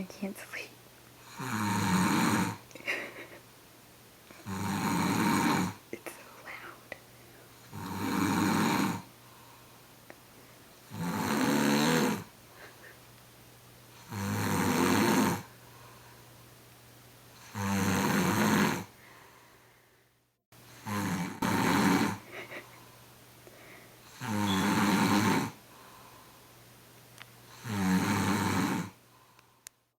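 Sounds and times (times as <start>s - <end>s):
man snoring loudly: 1.3s - 2.6s, 4.4s - 5.8s, 7.7s - 9.1s, 10.9s - 12.3s, 14.0s - 15.5s, 17.4s - 18.9s, 20.7s - 22.3s, 24.1s - 25.6s, 27.5s - 29.0s
quiet breathing: 6.0s - 7.7s, 9.1s - 10.8s, 15.4s - 16.4s, 18.8s - 20.3s, 22.2s - 26.6s, 28.9s - 29.8s.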